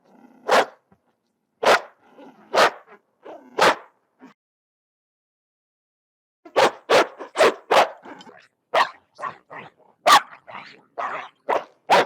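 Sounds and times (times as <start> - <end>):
dog growling low: 0.0 - 0.5, 2.0 - 2.6, 3.3 - 3.6, 8.0 - 8.5
dog barking: 0.4 - 0.8, 1.6 - 3.9, 6.5 - 8.1, 8.7 - 12.0.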